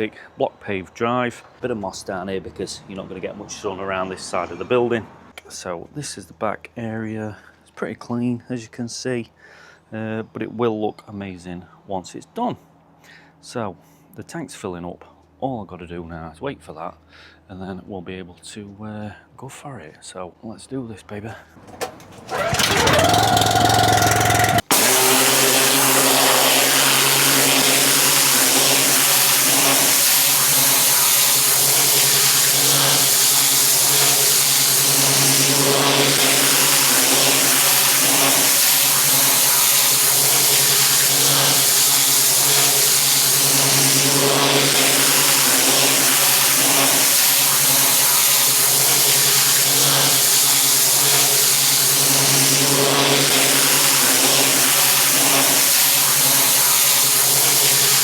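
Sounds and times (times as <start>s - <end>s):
pressure washer engine running: 21.6s - 58.0s
high-pressure water jet hissing: 22.3s - 58.0s.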